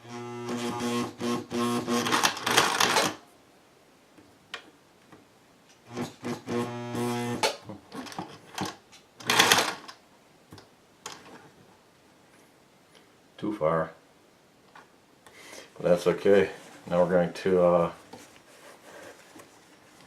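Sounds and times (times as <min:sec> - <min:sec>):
sewing machine stitching: 0:00.4 - 0:03.2, 0:09.2 - 0:09.8.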